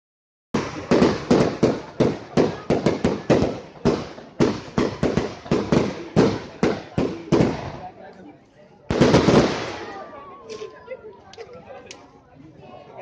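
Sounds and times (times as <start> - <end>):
fireworks bangs: 0.6 - 8.0, 8.9 - 10.2.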